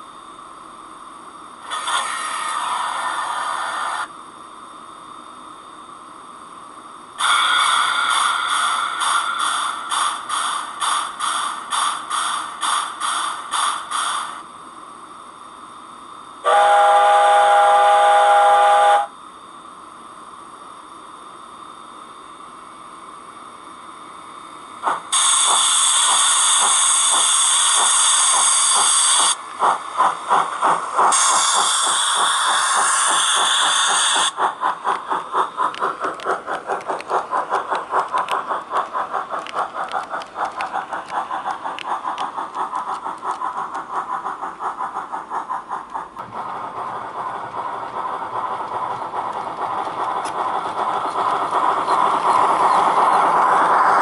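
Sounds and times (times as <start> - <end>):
steam hiss: 1.6 - 4.1, 7.2 - 14.5, 24.8 - 54.0
steam whistle blowing: 7.2 - 8.2, 16.4 - 19.1
locomotive exhaust chuffing: 24.9 - 54.0.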